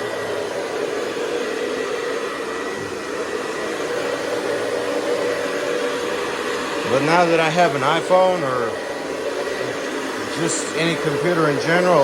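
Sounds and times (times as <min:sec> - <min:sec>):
vacuum cleaner running: 0:00.0 - 0:12.0.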